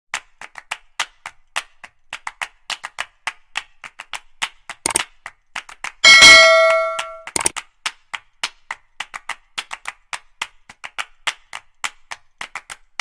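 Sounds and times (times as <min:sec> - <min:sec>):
ringing metallic strike: 0:06.0 - 0:07.3.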